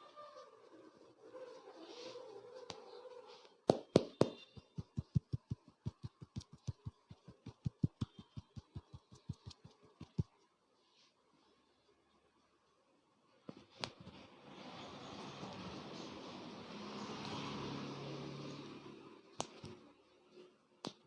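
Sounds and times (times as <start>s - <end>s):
rapid hollow hand pats: 3.7s - 10.4s.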